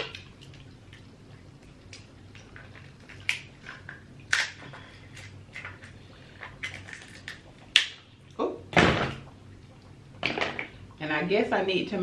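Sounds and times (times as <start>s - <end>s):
wet chewing and food handling: 0.2s - 8.4s.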